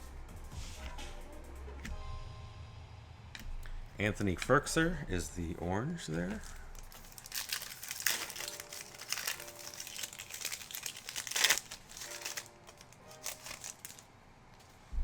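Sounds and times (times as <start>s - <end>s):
quiet background music: 0.0s - 15.0s
plastic wrapper crinkling: 6.1s - 14.1s.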